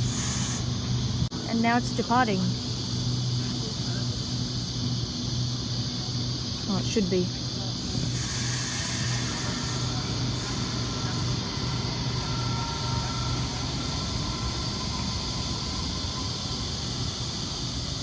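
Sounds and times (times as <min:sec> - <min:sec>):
electric train running: 0:00.0 - 0:18.0
faint high whines: 0:07.6 - 0:18.0.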